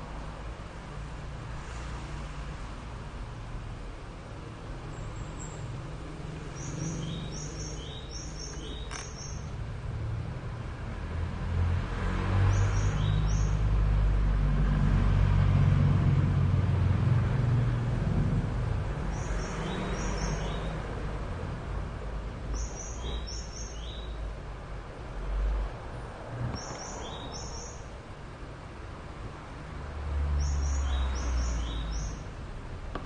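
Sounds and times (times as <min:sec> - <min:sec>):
vehicle engine rumbling: 0:02.9 - 0:33.0
small bird chirping: 0:06.4 - 0:09.6, 0:12.5 - 0:13.6, 0:19.1 - 0:20.8, 0:22.5 - 0:24.2, 0:26.5 - 0:27.9, 0:30.4 - 0:32.3.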